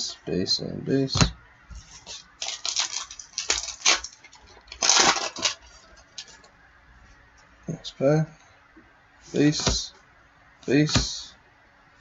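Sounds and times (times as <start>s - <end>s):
card pack wrapper crinkling: 2.4s - 6.5s.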